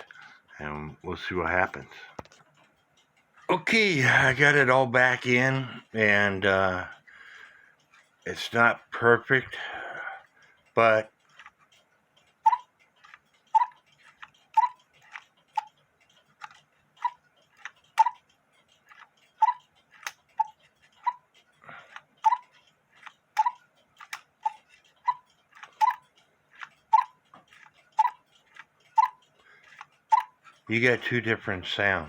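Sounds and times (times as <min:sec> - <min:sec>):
clock ticking: 0:00.0 - 0:32.0.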